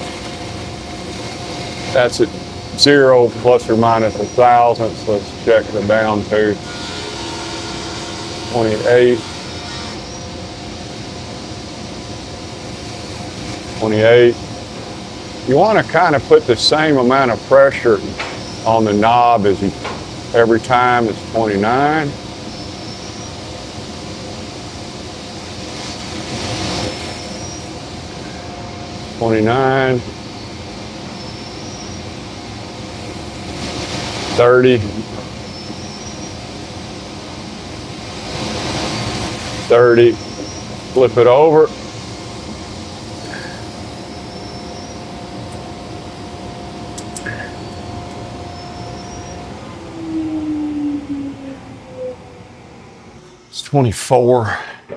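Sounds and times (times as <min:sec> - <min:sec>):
machinery or fan hum: 0:00.0 - 0:54.9
thin steady tone: 0:06.5 - 0:10.8, 0:39.8 - 0:49.7
brief loud hiss: 0:06.6 - 0:10.5.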